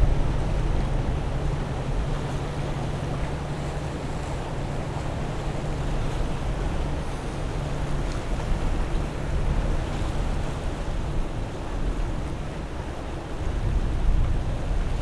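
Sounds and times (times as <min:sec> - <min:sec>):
wind rumbling on microphone: 0:00.0 - 0:03.2
boat engines droning: 0:00.0 - 0:13.5.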